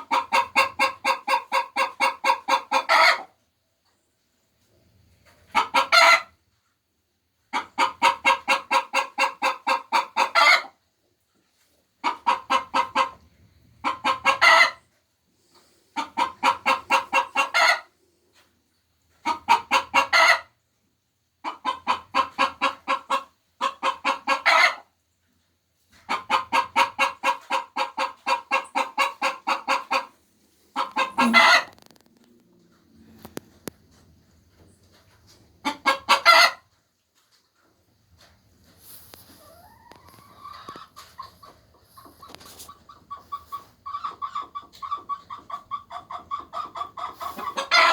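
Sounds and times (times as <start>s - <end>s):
hens cackling: 0.0s - 3.4s, 5.4s - 6.4s, 7.5s - 10.8s, 12.0s - 18.0s, 19.2s - 20.6s, 21.4s - 25.0s, 25.9s - 32.1s, 34.9s - 36.8s, 38.8s - 47.9s.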